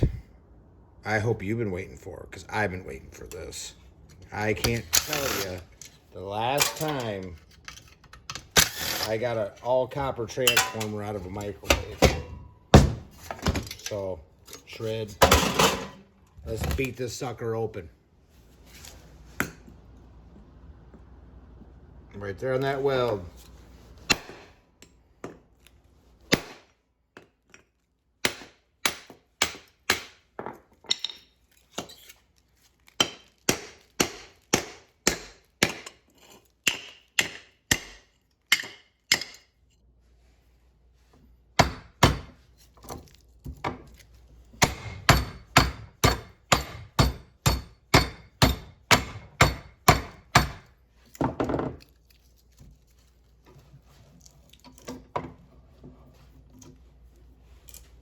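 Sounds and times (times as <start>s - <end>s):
hammer striking steel: 44.6s - 50.7s.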